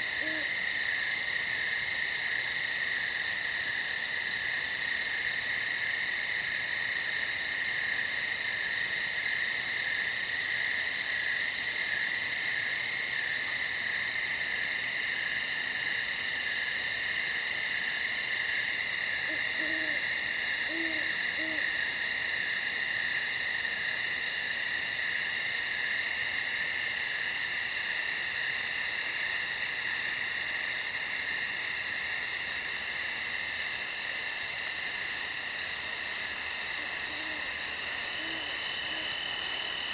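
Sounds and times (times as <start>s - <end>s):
insect chorus: 0.0s - 39.9s
owl hooting: 0.2s - 0.5s, 19.3s - 21.7s, 36.8s - 39.2s.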